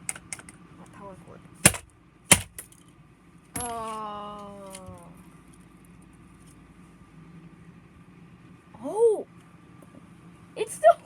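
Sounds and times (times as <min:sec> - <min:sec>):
clock display being smashed: 0:01.6 - 0:02.8.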